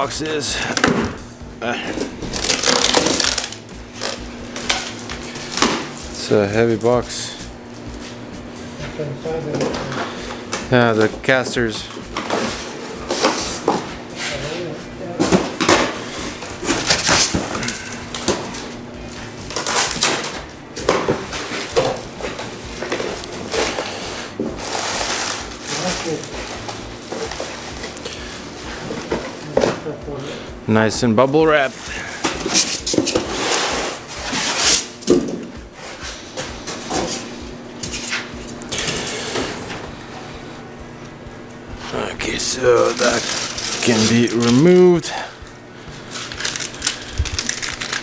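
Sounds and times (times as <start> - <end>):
bubble wrap and plastic rustling: 1.6 - 30.4, 31.6 - 40.5, 41.8 - 48.0
packing material rustling: 1.9 - 6.4, 21.2 - 29.6, 42.2 - 45.2, 46.0 - 48.0.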